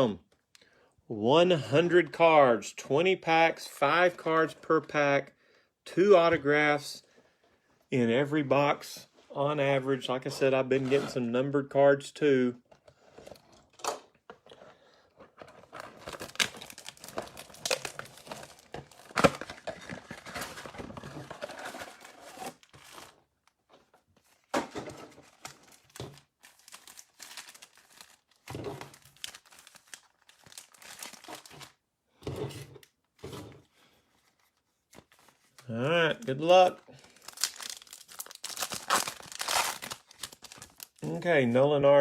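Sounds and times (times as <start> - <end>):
plastic wrapping crinkling and tearing: 15.4 - 23.2, 24.3 - 31.8, 35.0 - 41.2.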